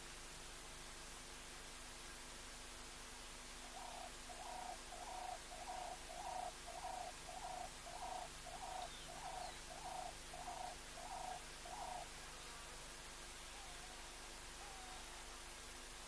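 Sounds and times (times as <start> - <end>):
bird hooting: 3.7 - 12.1, 13.5 - 15.1.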